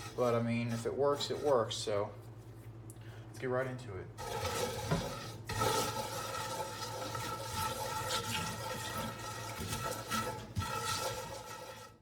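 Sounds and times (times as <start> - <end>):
potato scrubbing salt in skillet: 0.0 - 2.0, 4.2 - 12.0
water running in sink: 4.2 - 12.0.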